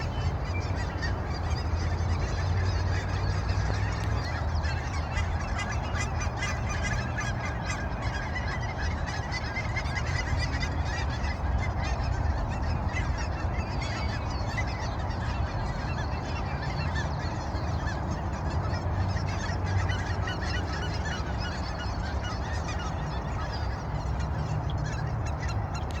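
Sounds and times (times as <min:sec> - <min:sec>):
geese honking: 0:00.0 - 0:26.0
low steady rumble: 0:00.0 - 0:26.0.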